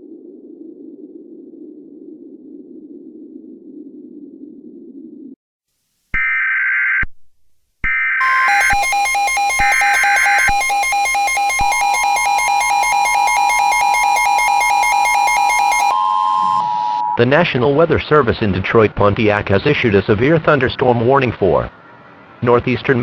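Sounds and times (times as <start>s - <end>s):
pulsing two-tone attention signal: 8.2s - 17.2s
screeching data tones: 8.2s - 17.2s.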